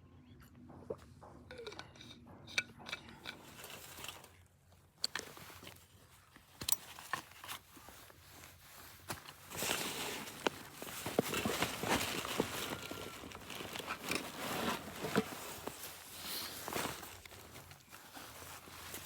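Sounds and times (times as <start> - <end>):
light rustling: 6.7 - 19.0.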